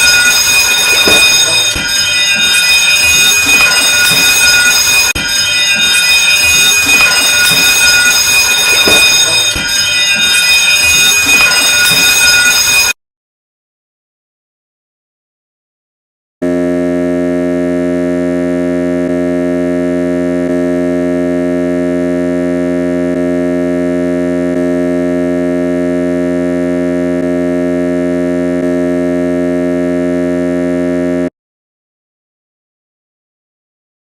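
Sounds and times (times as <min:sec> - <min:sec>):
ship's alarm steady tone: 0:00.0 - 0:13.0, 0:16.4 - 0:31.3.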